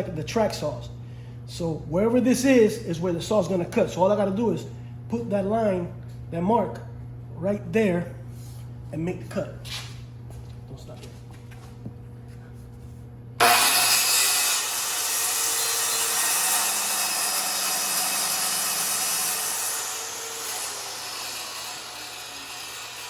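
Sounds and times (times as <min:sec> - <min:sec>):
circular saw cutting wood: 0:13.4 - 0:23.0.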